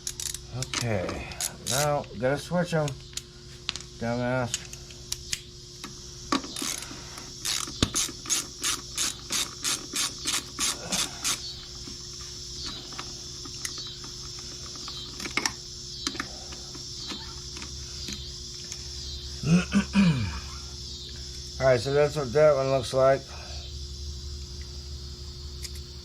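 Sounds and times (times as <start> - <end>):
socket ratchet clicking: 0.0 - 0.8, 1.4 - 2.0, 7.4 - 12.0.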